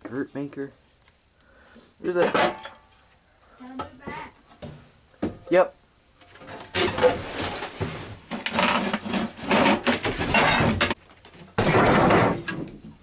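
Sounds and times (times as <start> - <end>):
objects scraping and clattering: 2.1 - 3.2, 6.2 - 13.0.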